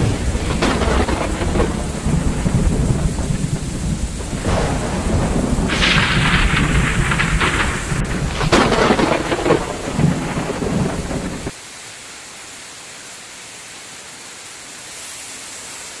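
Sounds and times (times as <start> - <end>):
strong low rumble: 0.0 - 11.5
heavy rain pouring: 0.0 - 16.0.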